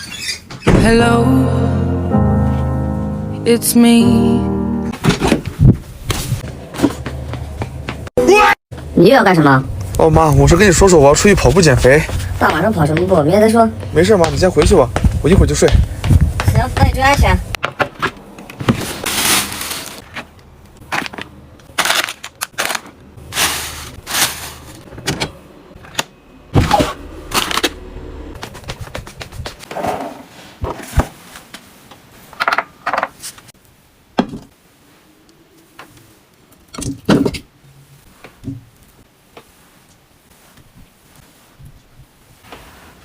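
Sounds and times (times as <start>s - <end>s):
plastic packaging crackling: 18.8s - 24.8s.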